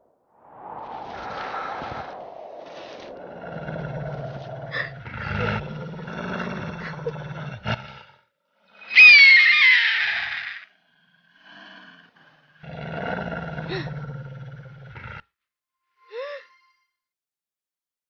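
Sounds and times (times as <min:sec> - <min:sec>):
animal growling: 0:02.7 - 0:15.2
high animal cry: 0:08.8 - 0:10.7.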